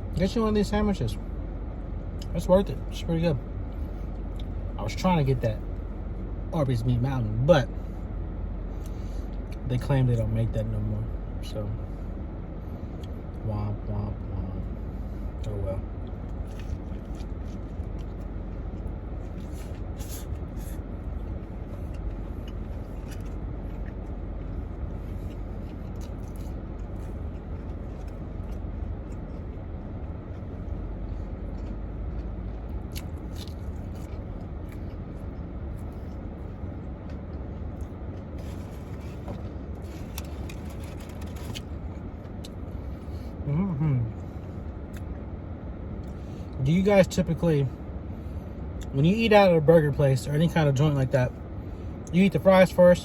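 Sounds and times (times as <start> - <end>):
steady low rumble: 0.0 - 53.0
person eating a sandwich: 16.0 - 45.1.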